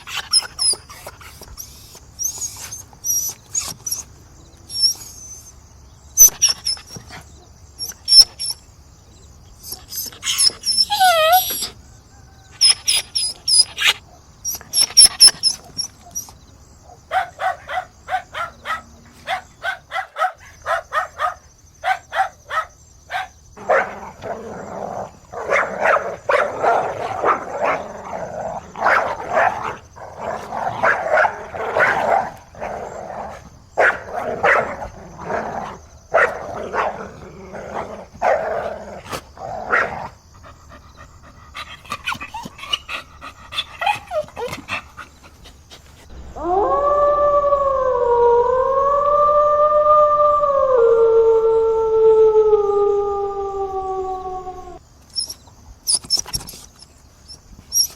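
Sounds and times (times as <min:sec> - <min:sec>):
dog barking: 0:16.9 - 0:24.2, 0:25.4 - 0:27.9, 0:28.8 - 0:29.8, 0:30.8 - 0:32.4, 0:33.8 - 0:34.8, 0:36.1 - 0:37.0, 0:37.8 - 0:38.6.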